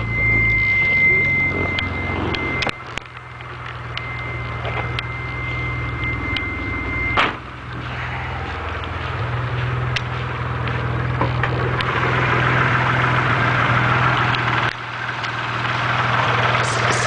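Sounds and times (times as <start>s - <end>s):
car engine idling: 0.0s - 17.0s
high-pitched whine: 0.0s - 17.0s
sharp ticks: 14.2s - 15.4s.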